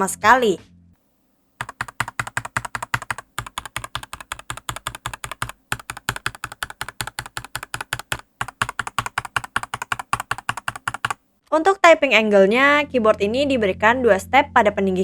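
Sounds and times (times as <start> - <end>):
mechanical keyboard typing: 1.6 - 11.2.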